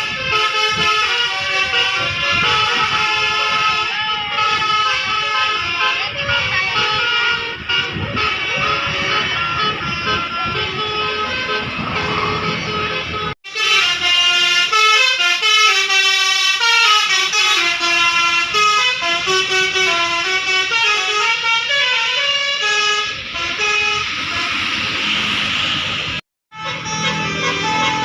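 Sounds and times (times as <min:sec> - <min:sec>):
musical air horn melody: 0:00.0 - 0:24.8, 0:26.5 - 0:28.0
steady rushing noise: 0:07.5 - 0:13.3, 0:23.3 - 0:26.2.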